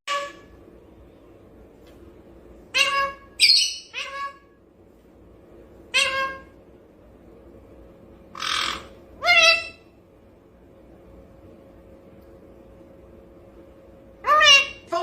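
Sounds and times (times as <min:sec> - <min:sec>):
parrot making meow-like calls: 0:02.7 - 0:04.5, 0:05.9 - 0:06.5, 0:08.4 - 0:09.8, 0:14.2 - 0:14.9.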